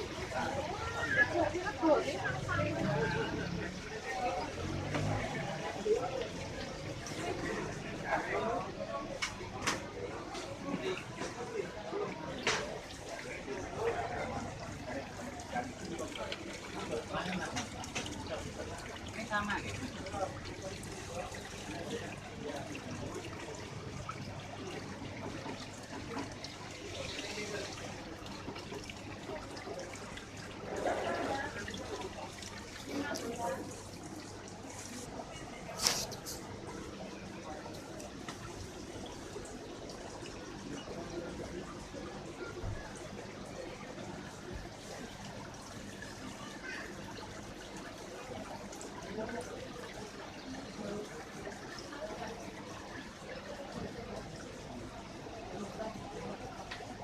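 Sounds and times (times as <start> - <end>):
faint voices: 0.0 - 57.0
water trickling in fish tanks: 0.0 - 57.0.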